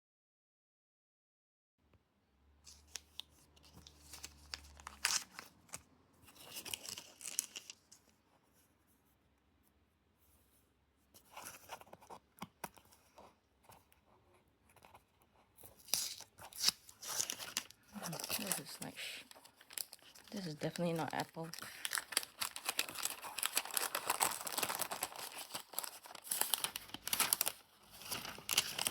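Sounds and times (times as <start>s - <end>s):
packaging tearing and crinkling: 2.7s - 7.9s, 15.7s - 28.9s.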